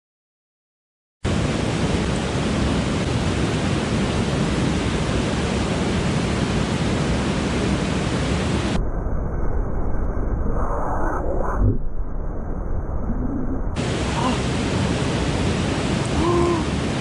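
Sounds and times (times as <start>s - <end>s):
stream water rushing: 1.3s - 8.7s, 13.8s - 17.0s.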